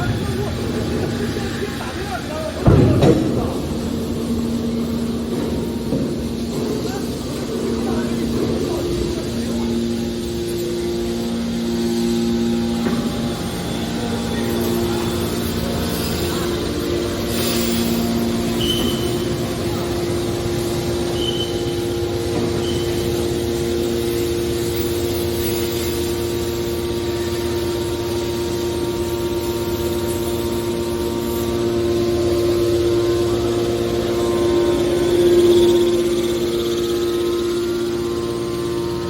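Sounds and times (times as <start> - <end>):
can baler machine hum: 0.0 - 39.0
short high squeaks: 18.6 - 19.3, 21.1 - 21.9.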